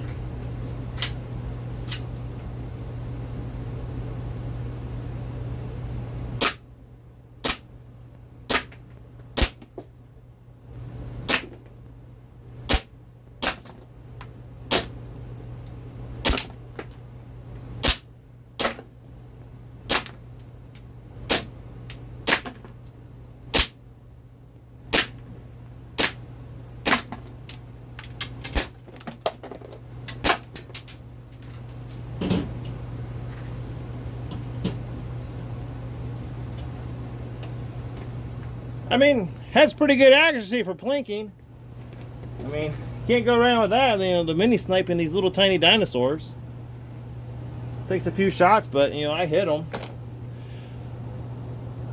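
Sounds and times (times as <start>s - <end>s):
steady low hum: 0.0s - 51.9s
airsoft pistol shots: 6.4s - 6.6s, 7.4s - 7.7s, 8.5s - 8.8s, 9.4s - 9.6s, 11.3s - 11.6s, 12.7s - 13.8s, 16.2s - 16.6s, 17.8s - 18.0s, 18.6s - 18.8s, 19.9s - 20.2s, 21.3s - 21.5s, 22.3s - 22.6s, 23.5s - 23.8s, 24.9s - 25.2s, 26.0s - 26.2s, 26.8s - 27.1s.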